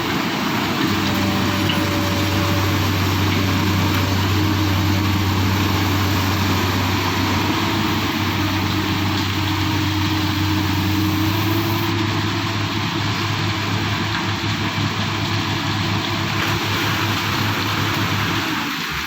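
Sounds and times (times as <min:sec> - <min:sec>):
higher engine tone: 0:00.0 - 0:18.9
excavator diesel engine running: 0:00.0 - 0:19.0.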